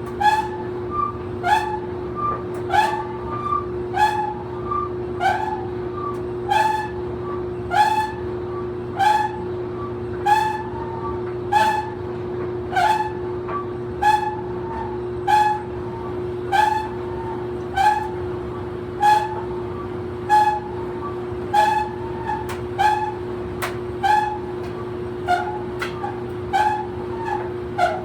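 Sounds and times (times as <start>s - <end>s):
dryer drum squeaking: 0.0s - 28.0s
clothes dryer humming: 14.6s - 28.0s.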